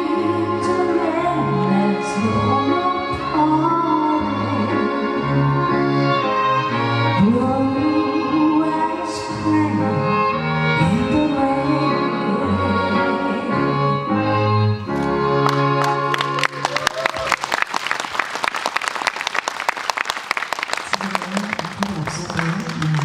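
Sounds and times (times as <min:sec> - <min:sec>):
slow ballad with bowed strings: 0:00.0 - 0:16.6
people clapping: 0:15.4 - 0:23.0.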